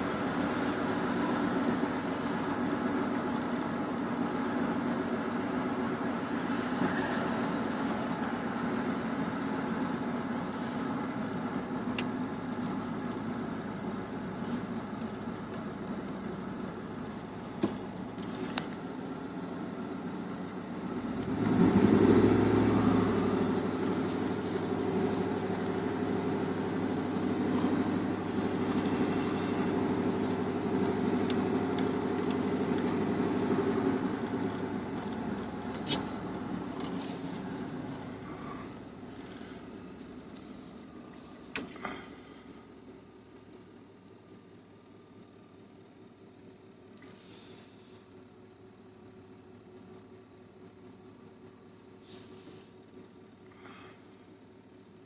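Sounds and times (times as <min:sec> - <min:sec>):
helicopter rotors droning: 0:22.4 - 0:42.6.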